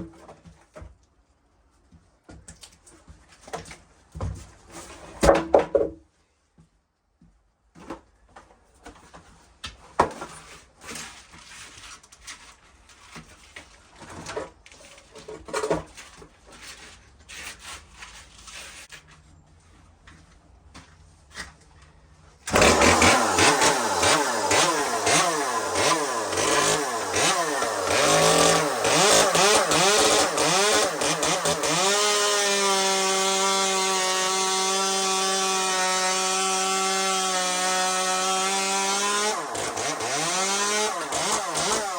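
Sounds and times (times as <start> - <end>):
chainsaw engine revving: 22.5 - 41.9.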